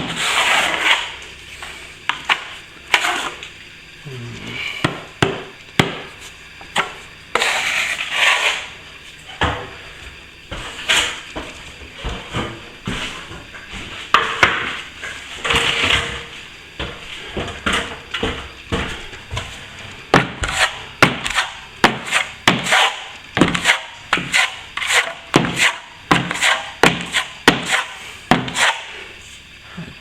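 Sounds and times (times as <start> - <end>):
plastering tool scraping wall: 0.0 - 1.2, 2.9 - 3.4, 7.3 - 8.8, 20.2 - 29.0.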